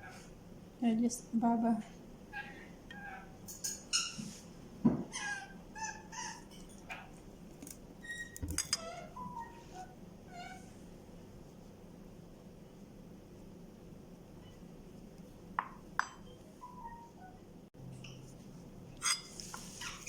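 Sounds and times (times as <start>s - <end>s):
high-pitched animal calls: 5.1s - 6.5s.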